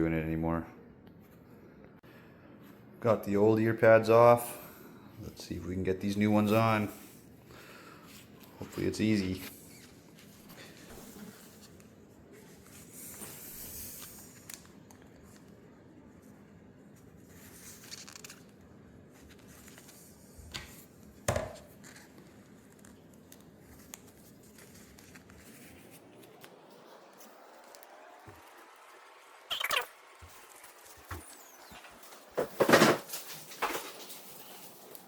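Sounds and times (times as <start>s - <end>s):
ear pad rustling and scraping: 8.2s - 14.6s, 17.0s - 28.4s.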